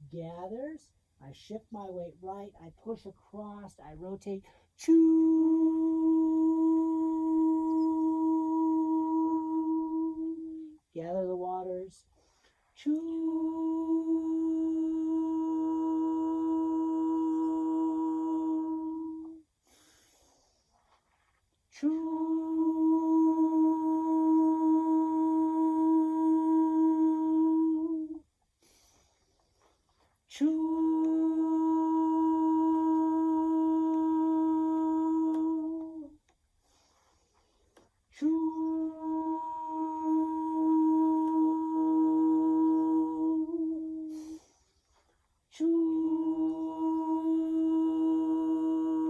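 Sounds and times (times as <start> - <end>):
person chanting a long oo: 4.8 - 12.0, 12.8 - 19.5, 21.8 - 28.2, 30.3 - 36.2, 38.2 - 44.4, 45.5 - 49.0.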